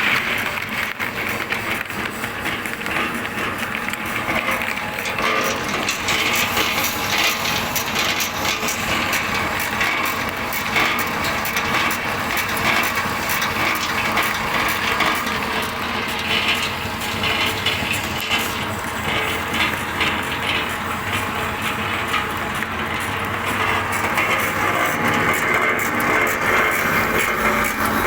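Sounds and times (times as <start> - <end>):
pellet mill running: 0.0 - 28.0
rapid crackling and clicking: 0.0 - 28.0.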